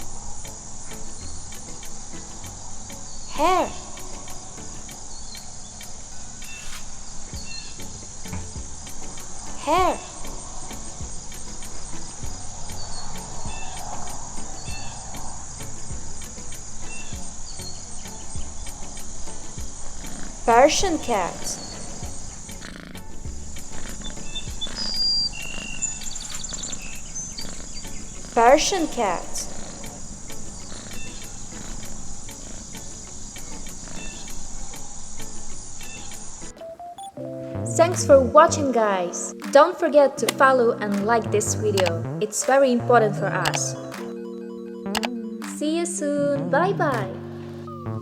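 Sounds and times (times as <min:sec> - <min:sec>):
faint ticks: 0:00.0 - 0:36.6, 0:44.9 - 0:45.8
faint bird chirps: 0:00.0 - 0:37.2
insects chirring: 0:00.0 - 0:37.2, 0:37.8 - 0:46.2.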